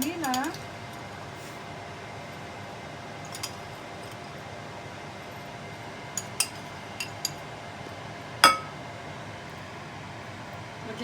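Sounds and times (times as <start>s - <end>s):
steady low hum: 8.2s - 9.4s
utensil clinking on ceramic dish: 8.4s - 8.8s.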